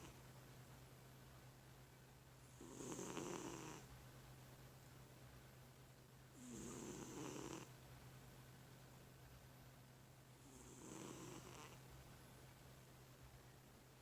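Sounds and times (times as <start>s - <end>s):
faint snoring: 2.5s - 3.9s, 6.4s - 7.7s, 10.4s - 11.8s.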